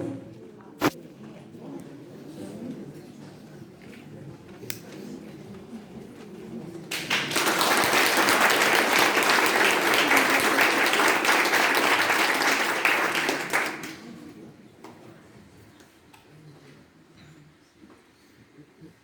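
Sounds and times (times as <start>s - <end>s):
audience applauding: 6.9s - 14.2s.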